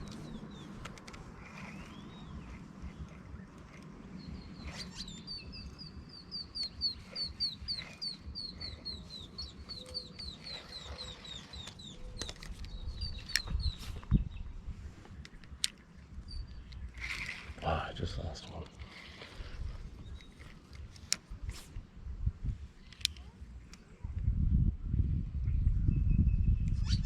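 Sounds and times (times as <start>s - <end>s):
sharp clicks: 0.0s - 14.2s, 15.1s - 17.5s, 22.8s - 23.9s.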